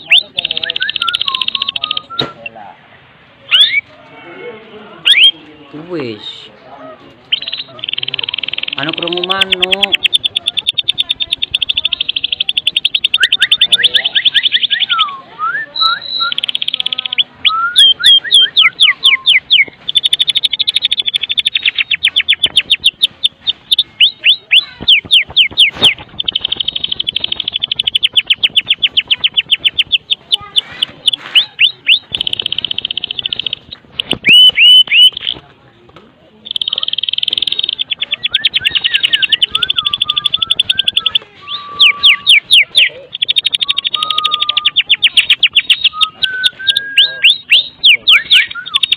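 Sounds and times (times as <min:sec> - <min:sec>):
bird rattling buzzy call: 0:16.2 - 0:35.4
bird downward-sweeping notes: 0:36.5 - 0:48.9
bird gliding whistles: 0:36.6 - 0:48.9.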